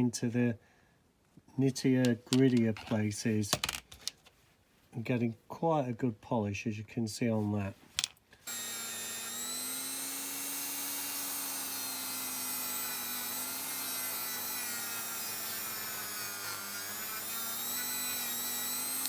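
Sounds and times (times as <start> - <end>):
rotary tool motor whine: 8.4 - 19.0.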